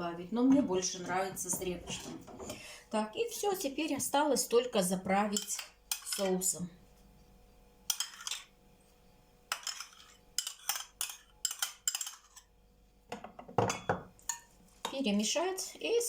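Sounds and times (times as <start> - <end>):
spoon scraping a bowl: 7.9 - 8.5, 9.5 - 12.5.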